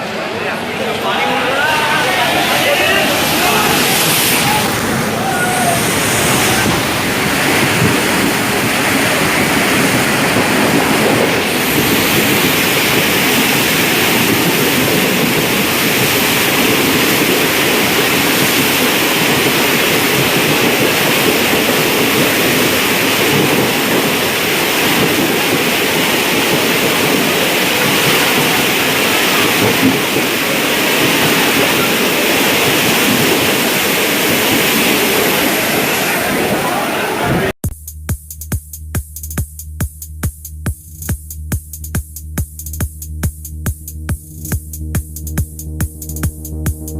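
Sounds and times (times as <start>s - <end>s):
train splashing through water: 0.0s - 37.5s.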